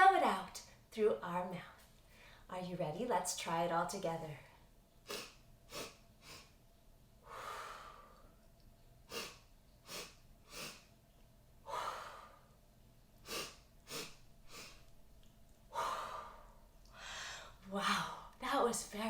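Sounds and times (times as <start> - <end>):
woman sniffing through nose: 5.1 - 6.5, 9.1 - 10.9, 13.2 - 14.8.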